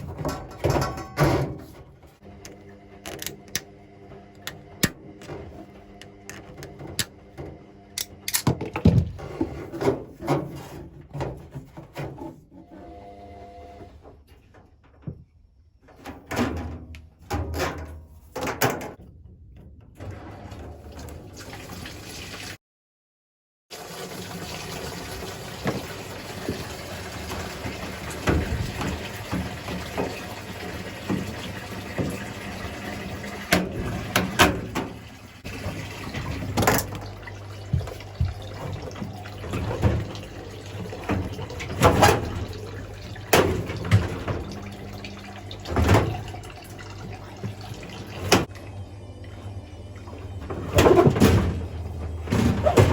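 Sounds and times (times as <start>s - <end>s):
washing machine knocks and clicks: 0.0s - 1.8s, 8.4s - 10.4s, 25.5s - 48.6s, 50.5s - 52.9s
water rushing into washing machine: 0.0s - 13.9s, 19.9s - 22.6s, 23.7s - 52.9s
low machine hum: 26.6s - 52.9s.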